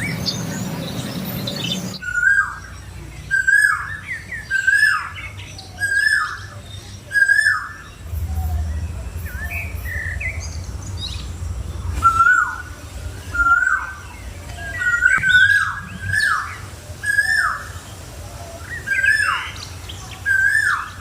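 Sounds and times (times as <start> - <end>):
bird whistled call: 0.0 - 11.3, 12.0 - 17.8
low rumble: 7.3 - 18.4.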